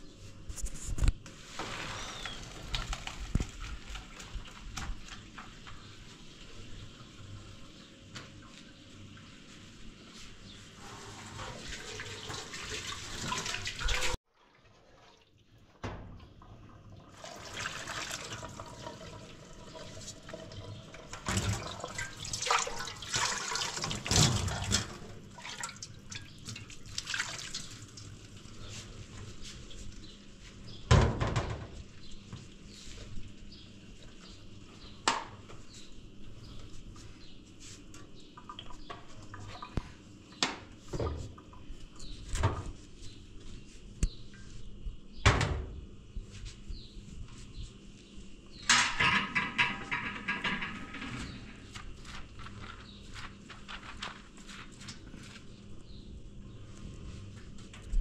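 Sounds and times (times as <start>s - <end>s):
water running and splashing: 11.2s - 14.2s, 17.0s - 28.7s
knocks and clatter: 48.7s - 51.9s.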